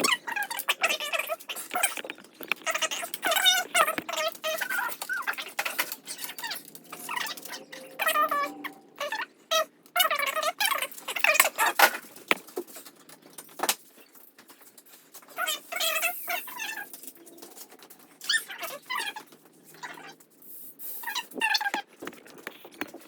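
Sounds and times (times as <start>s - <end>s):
sharp clicks: 1.4s - 4.2s.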